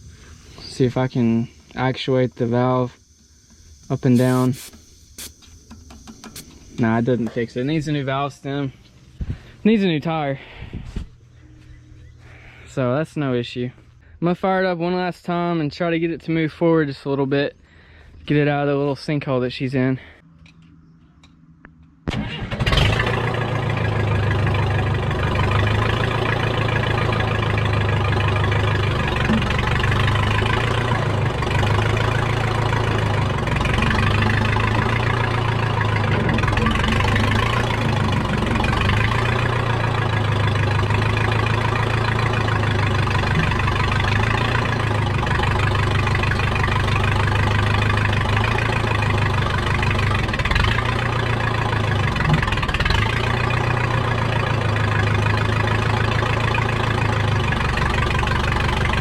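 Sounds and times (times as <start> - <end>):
backhoe engine idling: 22.4 - 59.0.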